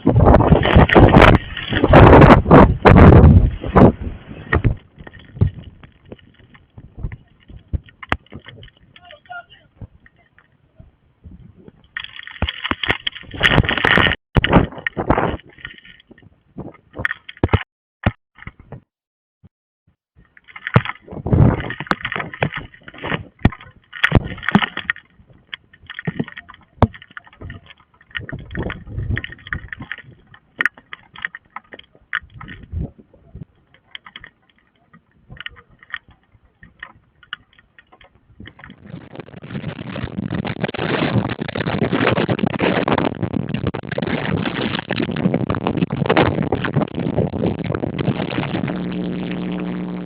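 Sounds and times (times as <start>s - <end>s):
storm wind gusting: 0.0s - 8.7s, 38.6s - 50.0s
sharp clicks and knocks: 11.7s - 18.9s.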